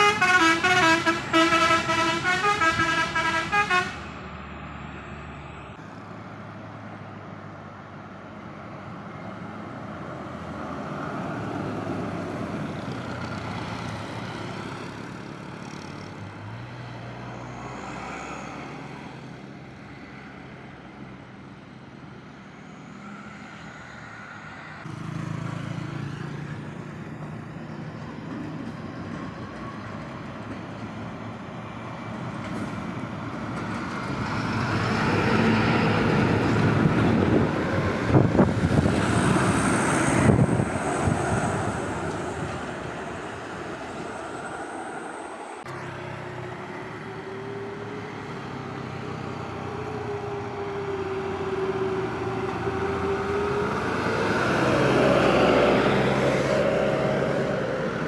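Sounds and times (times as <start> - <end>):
vehicle engine whine: 0.0 - 30.8, 31.6 - 58.0
heavy vehicle passing: 22.5 - 29.0, 31.8 - 58.0.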